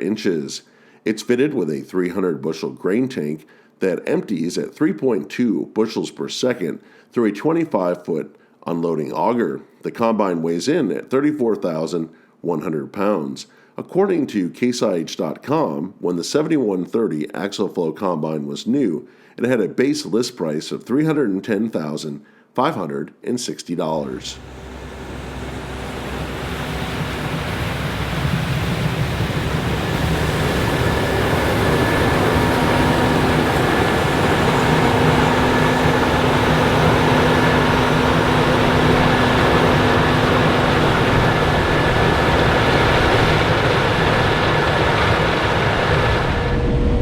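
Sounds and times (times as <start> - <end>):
combine harvester running: 24.2 - 46.9.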